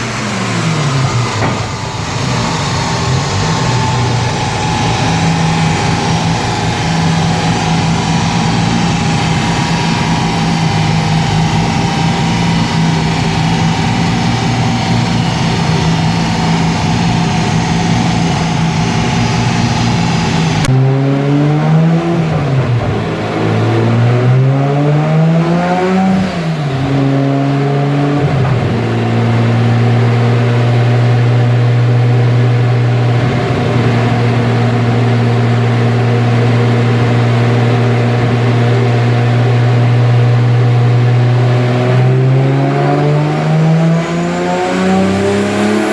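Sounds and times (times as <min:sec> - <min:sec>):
car engine revving on a dyno: 0:00.0 - 0:45.9.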